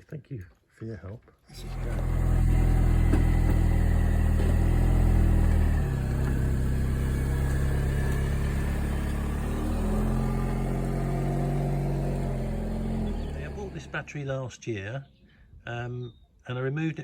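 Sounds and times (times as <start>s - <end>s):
car engine running at low revs: 1.5s - 14.3s.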